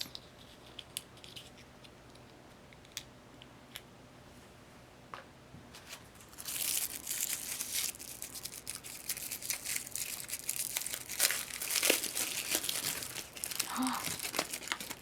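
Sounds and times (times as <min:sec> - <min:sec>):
packaging crinkling and tearing: 0:06.2 - 0:15.0.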